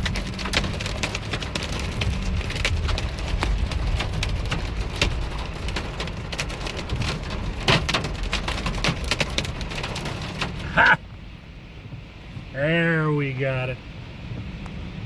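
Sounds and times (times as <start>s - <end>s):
hail pelting a vehicle: 0.0s - 11.0s
low rumble of moving vehicle: 0.0s - 15.0s.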